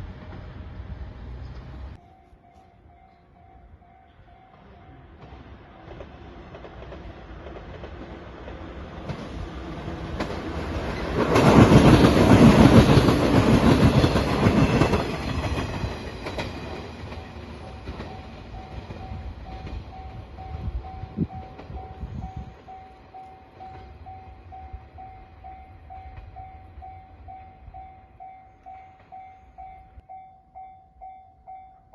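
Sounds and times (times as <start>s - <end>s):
level crossing warning bell: 2.0s - 6.1s, 17.0s - 31.9s
train wheels clattering over rails: 4.5s - 24.6s.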